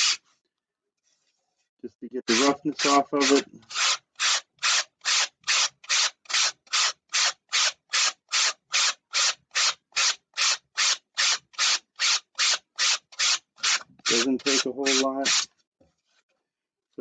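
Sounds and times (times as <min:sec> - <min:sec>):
sandpaper rubbing on foam: 0:00.0 - 0:00.2, 0:02.3 - 0:15.5.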